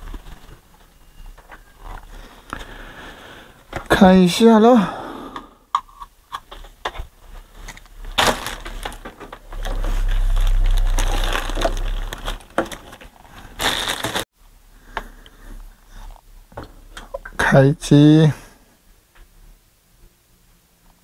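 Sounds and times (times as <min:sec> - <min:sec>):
noisy bursts: 0:07.1 - 0:14.8
loud low hum: 0:07.9 - 0:14.2.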